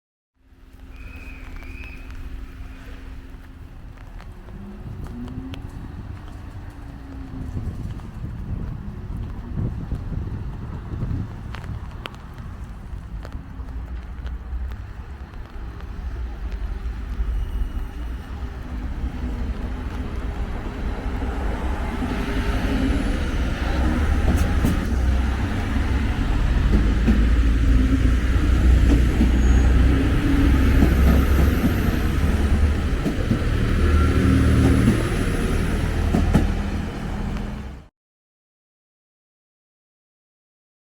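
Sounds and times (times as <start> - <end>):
train engines and wheels rumbling: 0.4 - 37.9.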